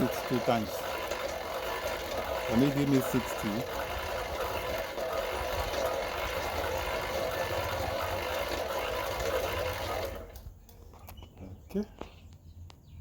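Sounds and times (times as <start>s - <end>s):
bicycle generator whirring: 0.0s - 11.2s.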